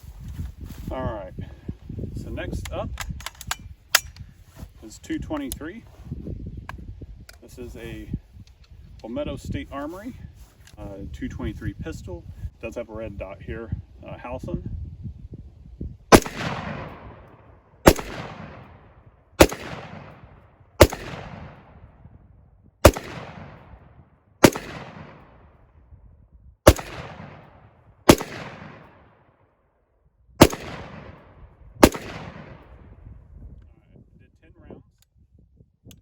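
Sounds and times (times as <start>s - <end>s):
pistol shots: 16.1s - 18.8s, 19.4s - 21.8s, 22.8s - 23.8s, 24.4s - 25.4s, 26.7s - 29.0s, 30.4s - 32.7s.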